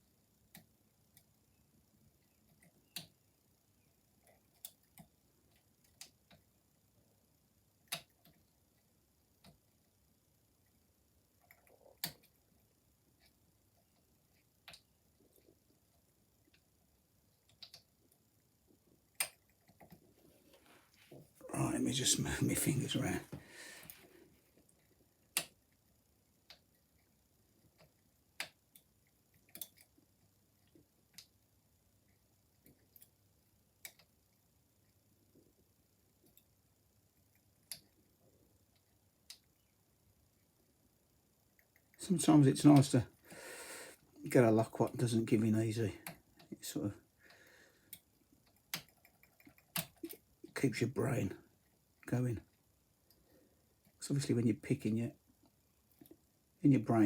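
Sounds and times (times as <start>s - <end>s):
faint clicks of padlock levers: 29.5s - 29.9s.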